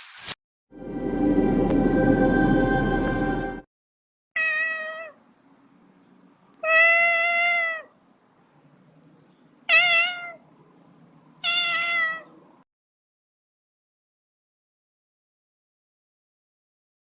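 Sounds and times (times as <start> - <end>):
cat meowing: 4.4 - 5.2, 6.6 - 8.0, 9.7 - 10.4, 11.4 - 12.4.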